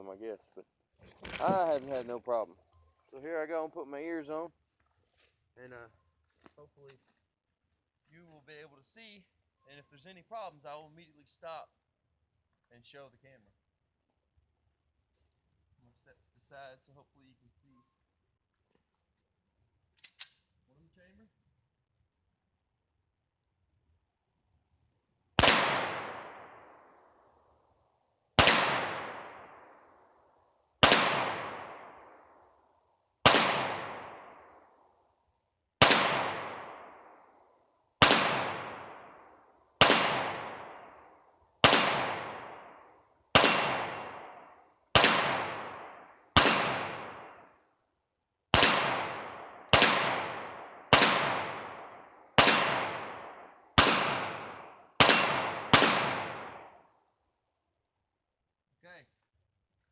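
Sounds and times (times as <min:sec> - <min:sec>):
pistol shots with echo: 0:25.4 - 0:27.3, 0:28.4 - 0:30.2, 0:30.8 - 0:32.6, 0:33.2 - 0:34.8, 0:35.8 - 0:37.4, 0:38.0 - 0:47.6, 0:48.5 - 0:56.8.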